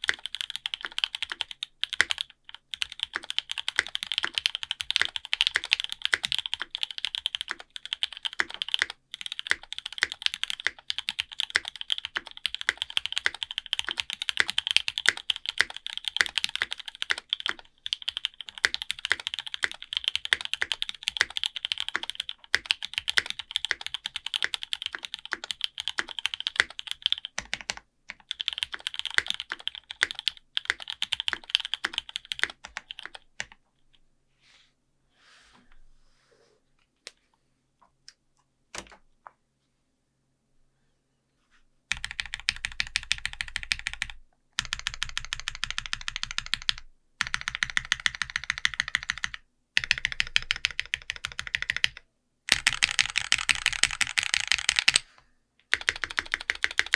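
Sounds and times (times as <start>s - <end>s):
fast mechanical keyboard typing: 0.0s - 33.6s, 41.9s - 55.1s, 55.7s - 56.9s.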